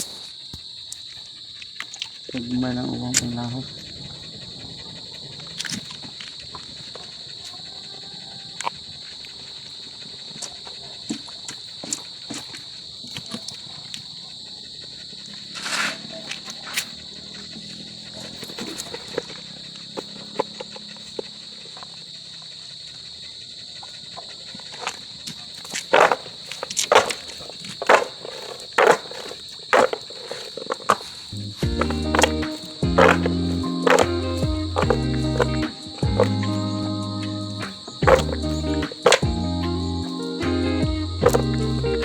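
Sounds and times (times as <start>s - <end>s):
insect chorus trilling: 0.0s - 42.0s
rustle: 15.5s - 16.9s.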